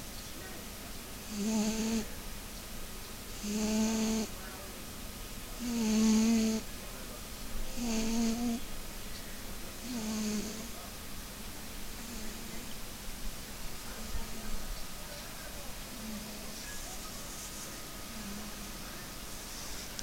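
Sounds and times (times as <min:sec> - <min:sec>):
cat snoring: 0:01.3 - 0:02.1, 0:03.4 - 0:04.3, 0:05.6 - 0:06.7, 0:07.7 - 0:08.6, 0:09.8 - 0:10.8.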